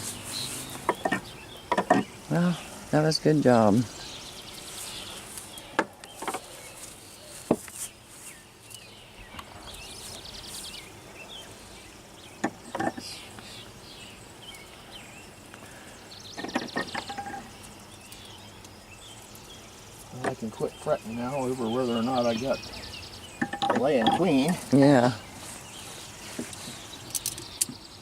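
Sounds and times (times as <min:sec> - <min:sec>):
insects buzzing: 0:00.0 - 0:28.0
wooden beehive boxes knocking: 0:00.8 - 0:02.2, 0:16.3 - 0:17.6, 0:20.2 - 0:20.5, 0:23.4 - 0:24.7
bird chirps: 0:03.4 - 0:28.0.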